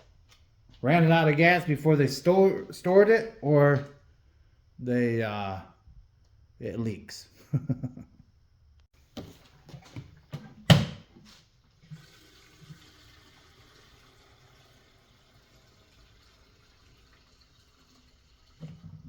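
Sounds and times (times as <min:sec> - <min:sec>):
gasoline pouring into tank: 0:11.7 - 0:19.0.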